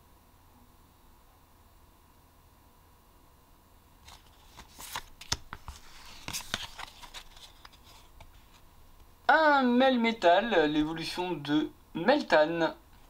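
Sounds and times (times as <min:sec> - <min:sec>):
trading cards clicking and rustling: 0:04.0 - 0:08.6.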